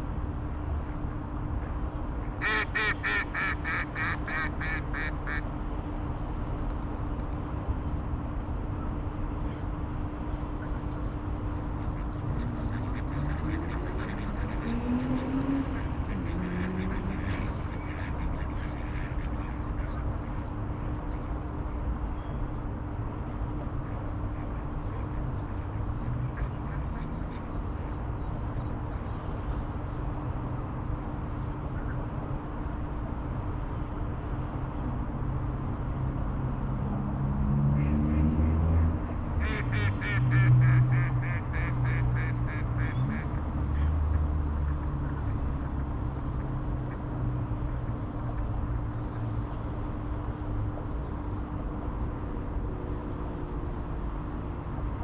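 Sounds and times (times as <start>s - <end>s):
distant traffic rumble: 0.0s - 55.0s
duck quacking: 2.4s - 5.4s, 39.4s - 43.9s.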